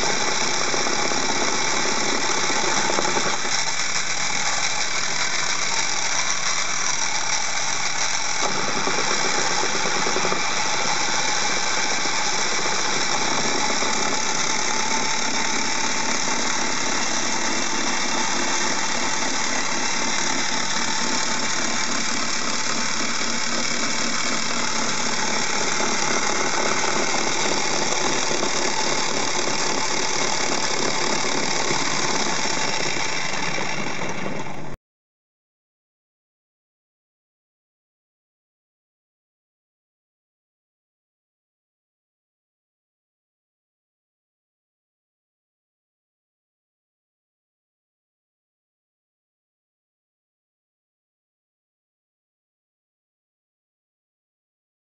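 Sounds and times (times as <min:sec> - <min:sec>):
spinning tops whirring and scraping: 0:00.0 - 0:34.8.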